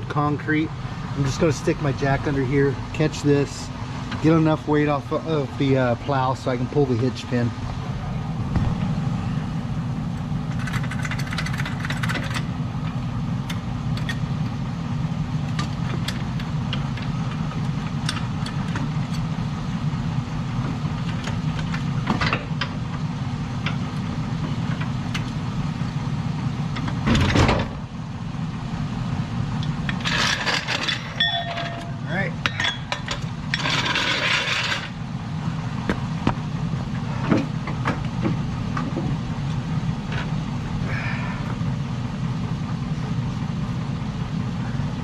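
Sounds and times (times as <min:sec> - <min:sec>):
truck engine idling: 0:00.0 - 0:45.0
metal clicks and clinks: 0:30.1 - 0:34.9.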